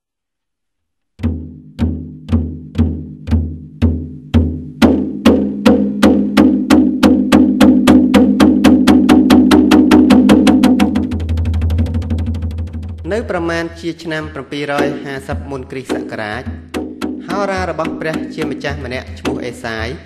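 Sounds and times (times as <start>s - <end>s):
percussive soundtrack music: 1.2s - 13.7s, 14.6s - 20.0s.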